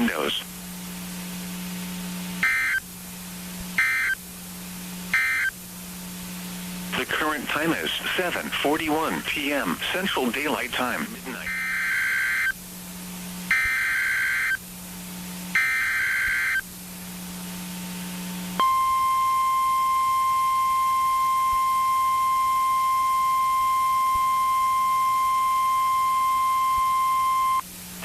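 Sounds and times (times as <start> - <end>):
radio hiss: 0.0 - 2.8, 6.0 - 13.5
digital header buzzing bursts: 2.4 - 2.8, 3.8 - 4.2, 5.1 - 5.6, 7.0 - 12.5, 15.5 - 16.6
steady alarm tone: 2.4 - 2.8, 3.8 - 4.2, 5.2 - 5.5, 7.6 - 12.5, 13.5 - 14.6, 15.6 - 16.6, 18.6 - 27.6.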